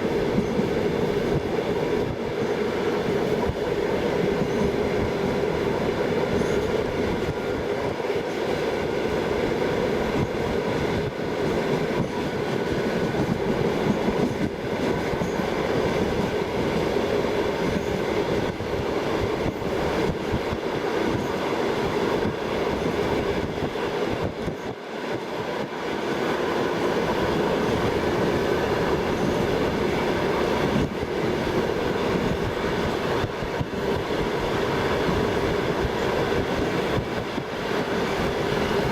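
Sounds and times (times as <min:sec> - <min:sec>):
train wheels rumbling on rails: 0:00.0 - 0:38.9.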